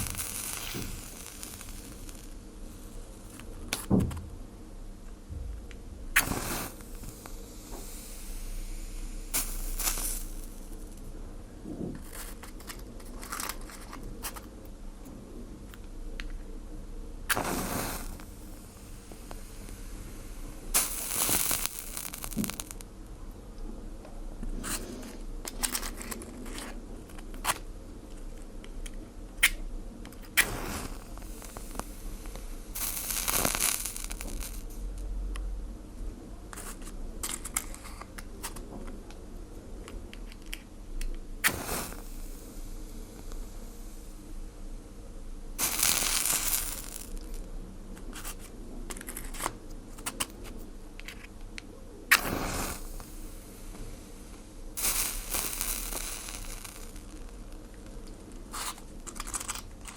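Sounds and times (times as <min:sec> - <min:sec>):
fire crackling and popping: 0:00.0 - 0:03.9, 0:06.1 - 0:11.1, 0:17.3 - 0:22.9, 0:29.4 - 0:35.1, 0:41.1 - 0:44.2, 0:45.5 - 0:47.5, 0:52.1 - 0:59.9
steady hiss: 0:00.0 - 0:14.8, 0:15.4 - 0:23.5, 0:29.4 - 0:38.6, 0:40.4 - 0:59.9.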